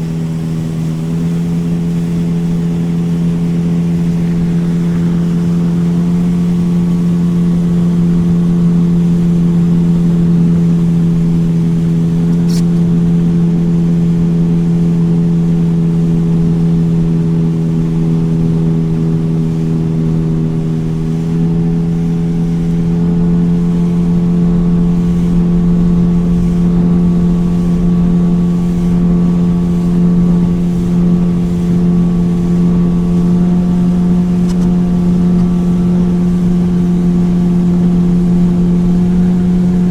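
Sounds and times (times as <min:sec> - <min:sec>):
motorboat engine droning: 0:00.0 - 0:39.9
brief click: 0:34.4 - 0:34.8.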